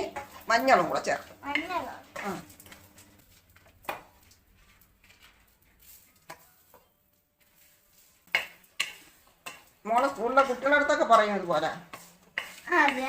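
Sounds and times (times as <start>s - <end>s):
faint sizzle in a pan: 0.0s - 13.0s
light knocks and scrapes: 1.6s - 9.7s.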